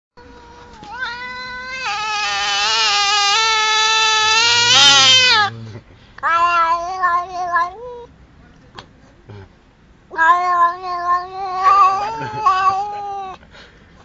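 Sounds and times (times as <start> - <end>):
cat yowling: 0.2 - 5.6, 6.2 - 8.1, 10.1 - 13.4.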